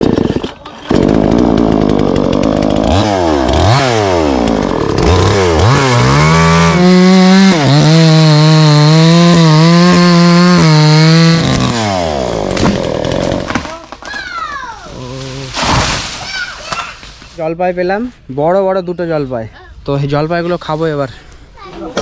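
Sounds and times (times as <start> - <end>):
chainsaw engine revving: 0.0 - 13.7.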